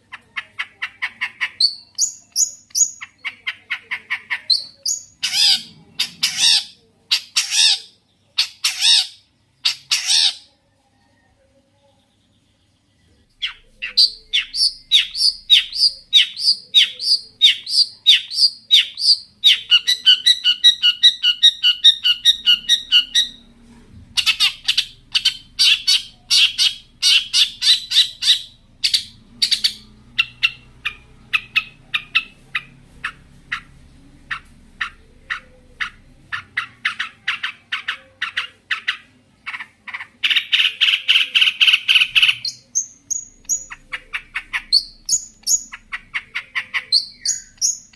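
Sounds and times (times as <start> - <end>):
shrike singing: 13.3 - 23.5.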